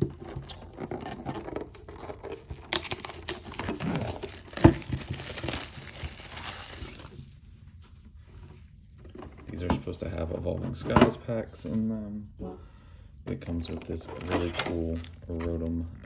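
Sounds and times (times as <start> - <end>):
plastic shrink-wrap tearing and crinkling: 0.2 - 7.2.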